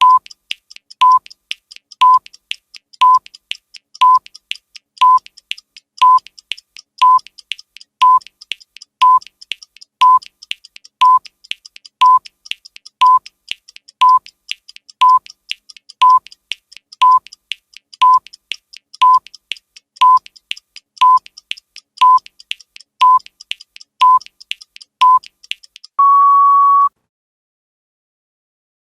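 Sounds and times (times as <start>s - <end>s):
short electronic beeps: 0.0s - 0.2s, 6.0s - 6.2s, 7.0s - 7.2s, 8.0s - 8.2s, 9.0s - 9.2s, 22.0s - 22.2s, 23.0s - 23.2s, 24.0s - 24.2s, 25.0s - 25.2s, 26.0s - 26.9s
faint clicks: 0.0s - 26.0s
long higher beep: 26.0s - 26.9s.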